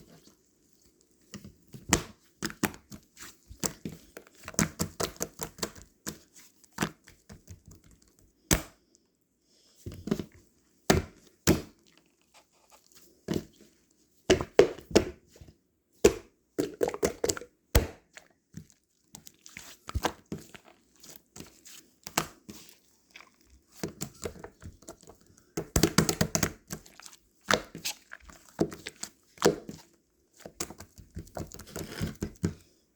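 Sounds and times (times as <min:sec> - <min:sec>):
sticky squishing crackles: 0:00.0 - 0:08.7, 0:16.7 - 0:32.6.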